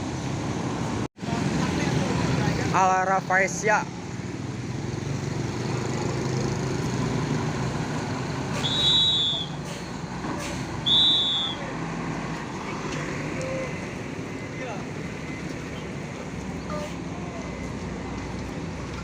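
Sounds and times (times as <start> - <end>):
bus engine passing: 0.0 - 19.0
high whistle-like tones: 8.6 - 9.6, 10.8 - 11.7.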